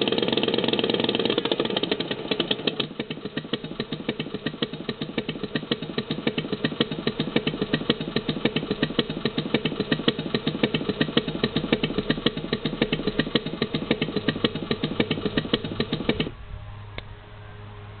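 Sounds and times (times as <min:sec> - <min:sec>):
motorcycle engine idling: 0:00.0 - 0:16.4
faint low hum: 0:16.3 - 0:18.0.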